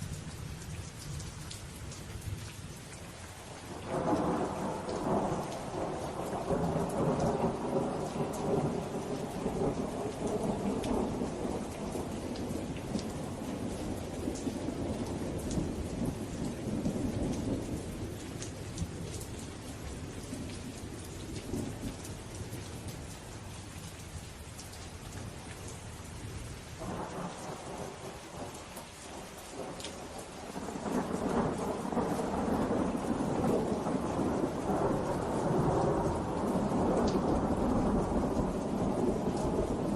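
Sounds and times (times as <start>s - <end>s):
raindrops ticking: 0.0s - 39.9s
steady rain: 0.0s - 39.9s
rolling thunder: 3.8s - 19.2s, 29.1s - 39.9s.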